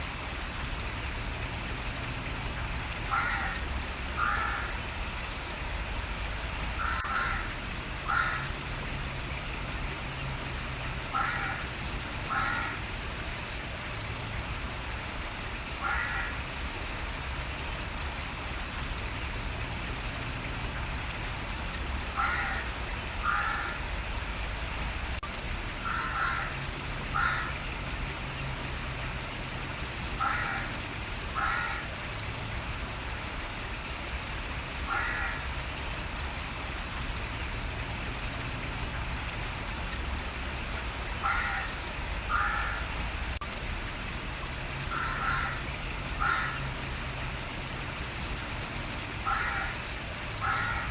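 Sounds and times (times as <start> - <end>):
running water: 0.0 - 50.9
bird calling: 3.1 - 3.6, 6.8 - 7.5.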